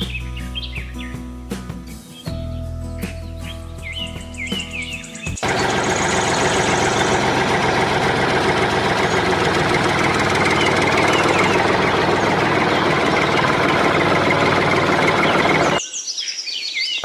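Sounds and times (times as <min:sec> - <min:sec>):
small motor running: 0:05.4 - 0:15.8.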